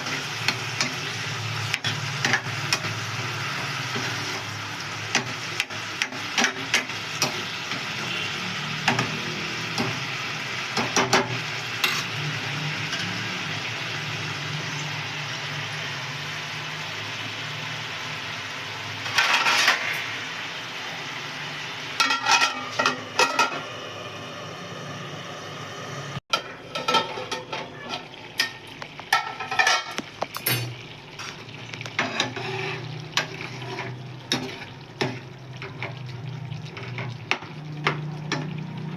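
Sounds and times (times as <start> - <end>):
spatula scraping a pan: 0.0 - 10.1, 18.9 - 20.2, 22.0 - 23.6, 26.3 - 30.0, 30.6 - 36.0
curry sizzling in a pan: 0.0 - 38.9.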